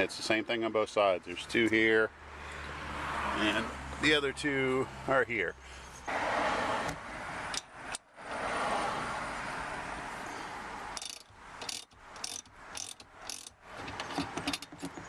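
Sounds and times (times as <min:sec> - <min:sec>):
ratchet wrench clicking: 0:11.0 - 0:15.0.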